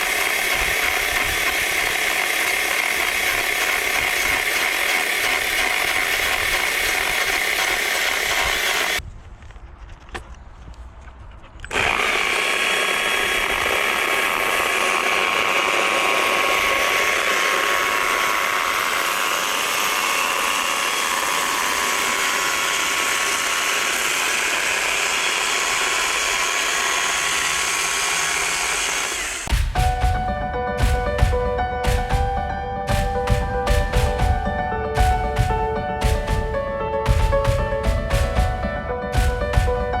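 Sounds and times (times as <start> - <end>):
electric power tool whining: 0.0 - 9.0, 11.6 - 29.5.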